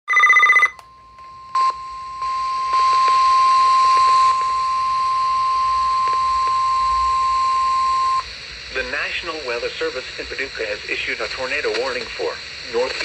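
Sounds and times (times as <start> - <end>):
steady warning alarm tone: 0.1 - 8.3
radio static hiss: 1.6 - 13.0.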